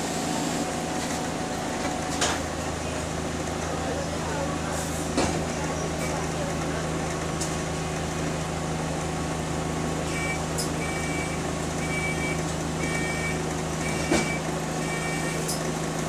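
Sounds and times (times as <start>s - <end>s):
bus engine humming: 0.0s - 16.0s
short electronic beeps: 10.1s - 15.6s.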